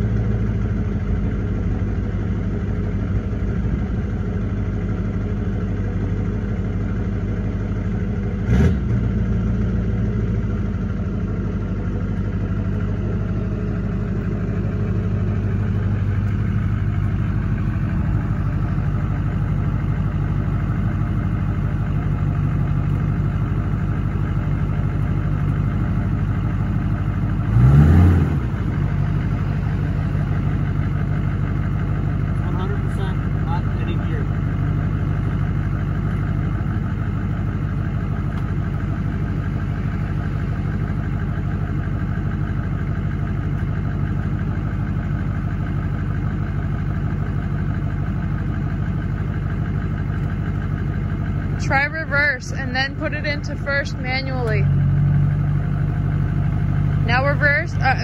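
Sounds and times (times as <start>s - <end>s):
engine idling: 0.0s - 58.0s
engine revving: 8.3s - 9.8s, 27.0s - 30.4s, 51.4s - 55.4s, 56.3s - 58.0s.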